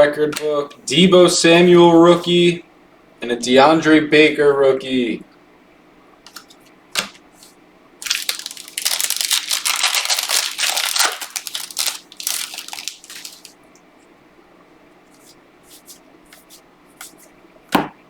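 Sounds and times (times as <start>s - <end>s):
wrapper tearing and crinkling: 8.0s - 13.6s.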